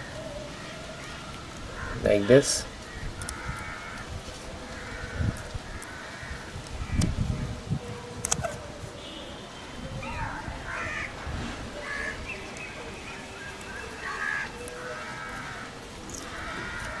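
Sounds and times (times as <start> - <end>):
crows cawing: 0.0 - 7.1, 10.7 - 11.2, 11.8 - 12.2, 13.4 - 17.0.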